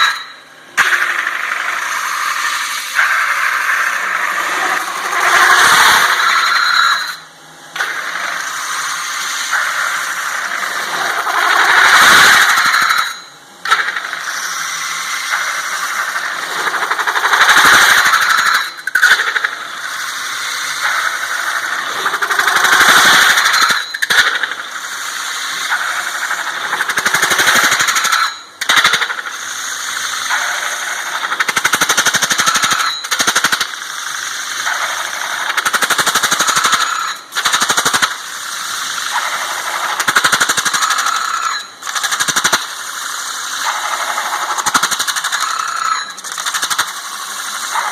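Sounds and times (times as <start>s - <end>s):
metal-spinning lathe squealing chatter: 2.0s - 7.3s, 10.7s - 13.3s, 15.2s - 19.3s, 20.4s - 24.1s, 27.5s - 28.5s, 36.4s - 37.3s, 40.8s - 41.8s, 43.6s - 46.5s.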